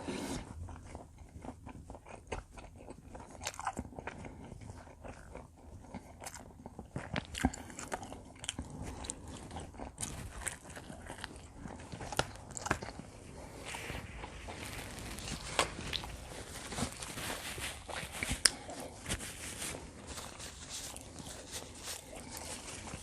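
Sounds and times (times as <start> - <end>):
chewing crunchy pizza crust: 0.0 - 23.0.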